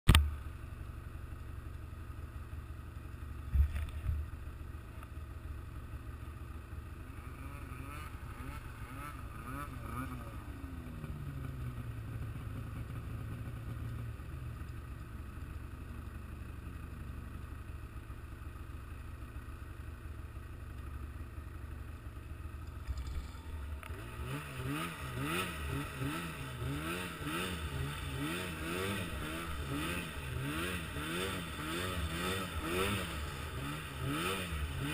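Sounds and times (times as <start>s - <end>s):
vehicle engine revving: 7.1s - 14.7s, 22.8s - 34.9s.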